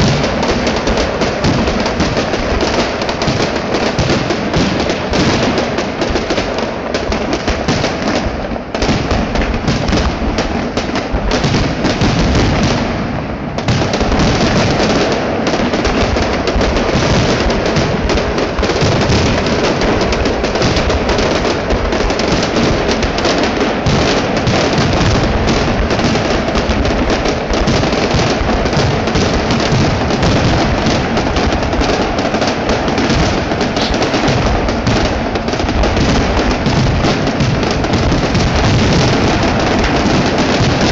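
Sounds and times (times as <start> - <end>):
fireworks crackling: 0.0 - 40.9
firework shell bursts: 22.2 - 40.9.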